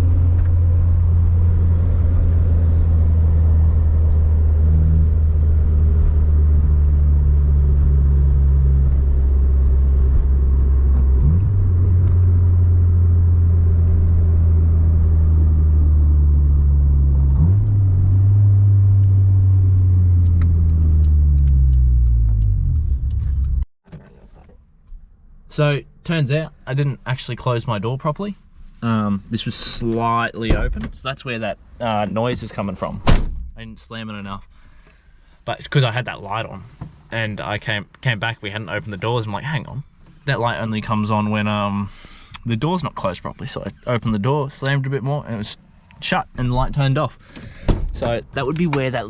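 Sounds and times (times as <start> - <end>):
car engine and road drone: 0.0 - 33.3.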